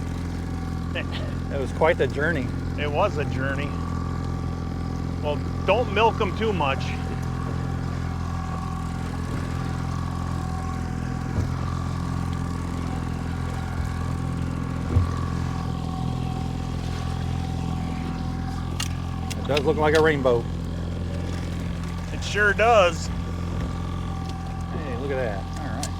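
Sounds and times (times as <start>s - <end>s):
boat engine running: 0.0s - 25.9s
knocks on boat: 10.7s - 16.4s, 23.1s - 24.5s.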